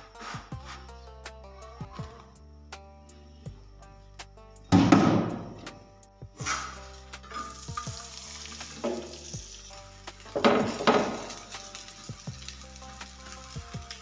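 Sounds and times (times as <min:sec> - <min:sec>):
soft background music: 0:00.0 - 0:14.0
bread sizzling on hot pan: 0:06.4 - 0:14.0.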